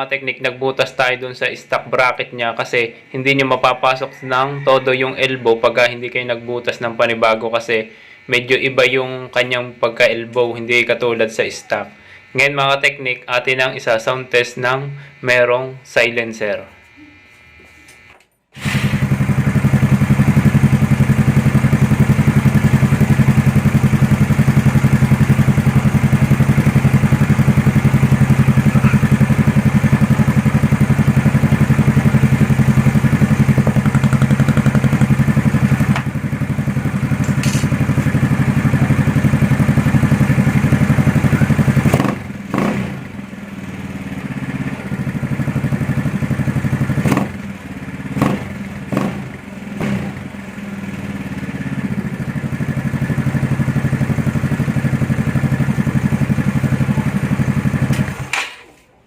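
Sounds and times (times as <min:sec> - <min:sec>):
scooter engine idling loudly: 0:18.6 - 0:58.4.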